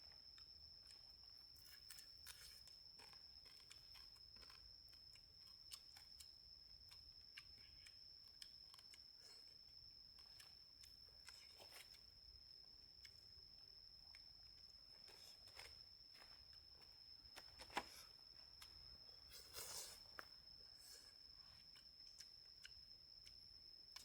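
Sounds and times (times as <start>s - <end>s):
faint clicks and ticks: 0.2s - 14.8s, 21.2s - 24.0s.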